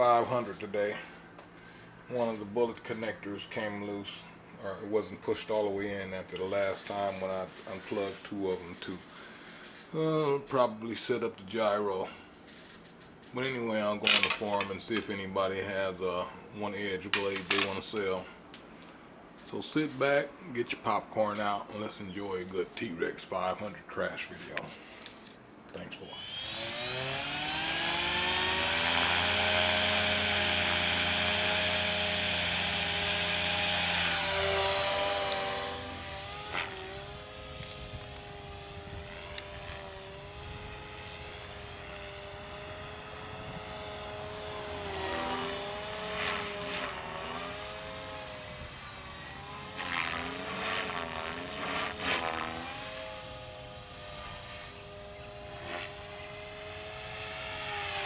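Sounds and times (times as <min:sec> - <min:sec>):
rc helicopter rotor whine: 0:26.0 - 0:58.0.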